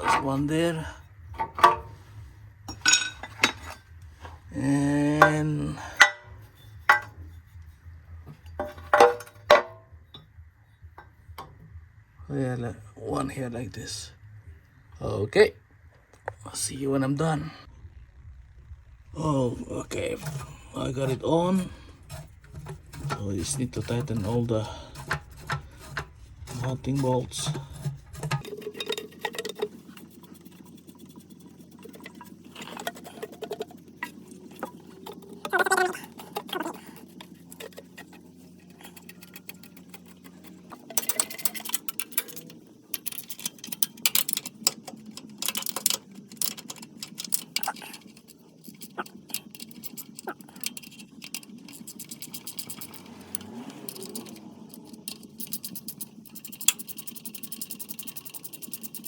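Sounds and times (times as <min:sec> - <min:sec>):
wrench clicking and tapping: 0:38.9 - 0:59.0.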